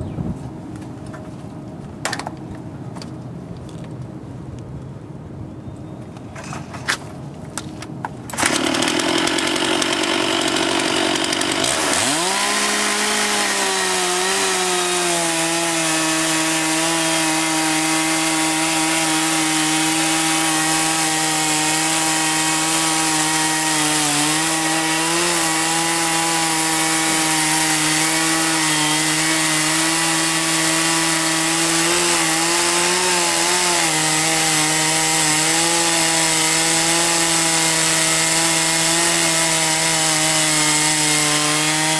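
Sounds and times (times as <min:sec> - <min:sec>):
sawmill motor running: 0:08.3 - 0:41.9.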